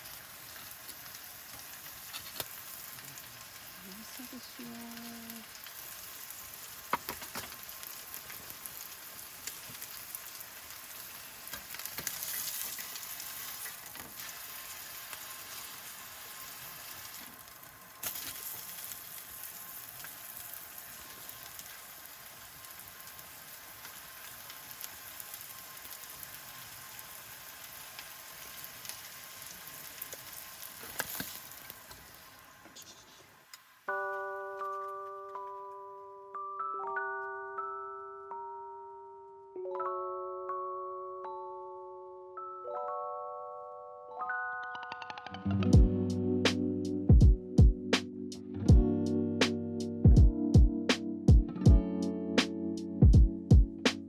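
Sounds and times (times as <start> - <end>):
oil popping and crackling: 0.0 - 33.6
food sizzling in a hot pan: 0.0 - 34.8.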